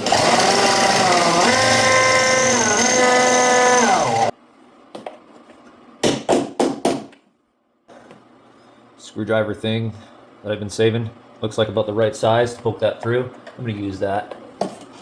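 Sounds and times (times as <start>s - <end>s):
power drill drilling metal: 0.0s - 4.3s.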